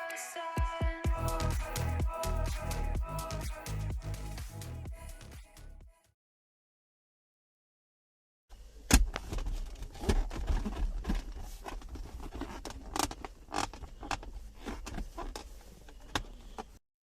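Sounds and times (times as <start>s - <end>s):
low rumble: 1.1s - 5.8s.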